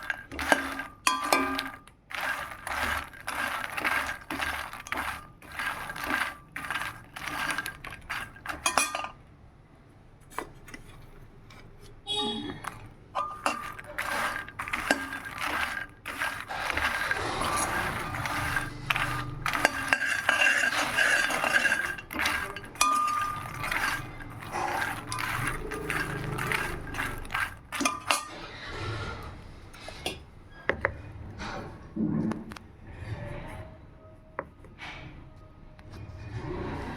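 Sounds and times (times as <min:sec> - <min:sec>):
nuts rattling in a pan: 0:00.0 - 0:09.2, 0:12.5 - 0:28.5.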